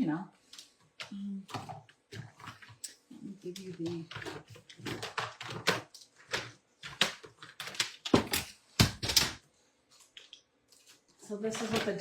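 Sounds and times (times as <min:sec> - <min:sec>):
craft supplies clicking and tapping: 0:00.5 - 0:09.4.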